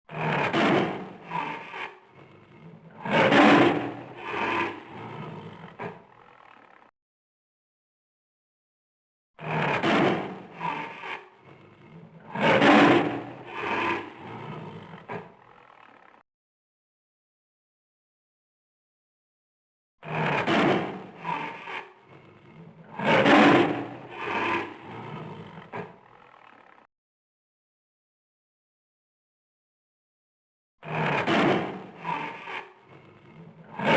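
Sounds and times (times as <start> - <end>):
lion grunt: 0.1 - 6.9, 9.4 - 16.2, 20.0 - 26.9, 30.8 - 33.9
lion roaring: 0.1 - 6.9, 9.4 - 16.2, 20.0 - 26.9, 30.8 - 33.9.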